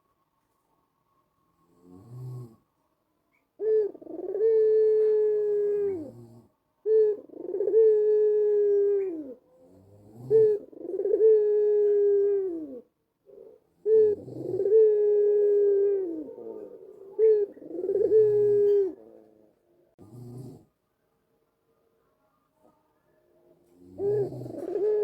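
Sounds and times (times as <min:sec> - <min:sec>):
dove cooing: 0:03.3 - 0:19.5, 0:23.7 - 0:25.0.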